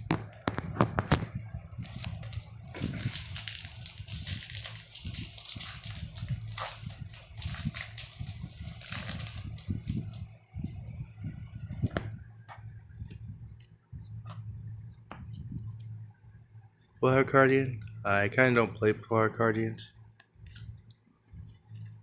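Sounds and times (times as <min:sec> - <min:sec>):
foil wrapper tearing and rustling: 0:01.8 - 0:10.2.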